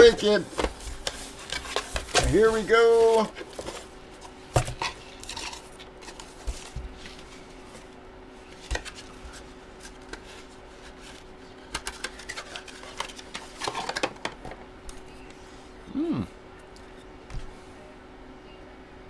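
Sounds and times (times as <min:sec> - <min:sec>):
packaging clicks and rustles: 0:00.0 - 0:07.9, 0:08.5 - 0:14.6
faint steady hum: 0:00.0 - 0:19.0.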